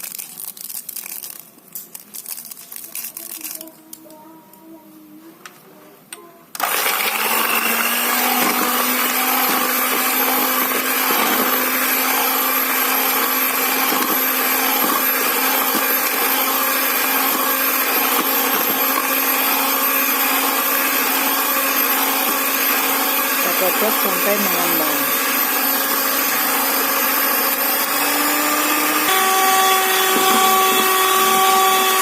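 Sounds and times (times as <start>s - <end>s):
electric mixer running: 6.6s - 32.0s.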